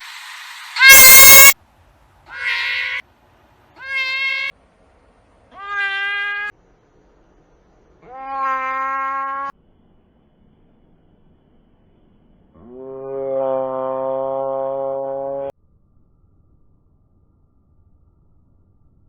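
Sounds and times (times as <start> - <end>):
cat meows: 0.8 - 1.6, 2.3 - 3.0, 3.8 - 4.5, 5.5 - 6.5, 8.0 - 9.5.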